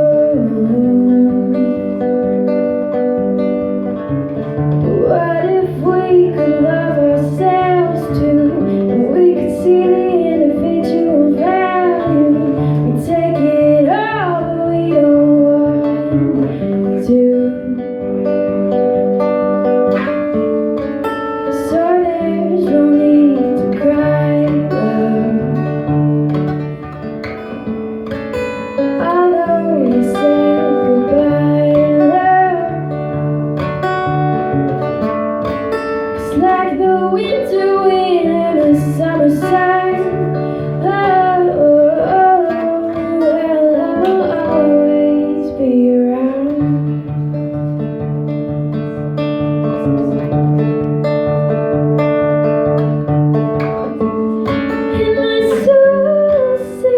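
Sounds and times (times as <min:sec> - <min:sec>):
acoustic guitar playing: 0:00.0 - 0:56.9
woman singing long notes: 0:21.5 - 0:25.7, 0:29.0 - 0:32.8, 0:54.8 - 0:56.9.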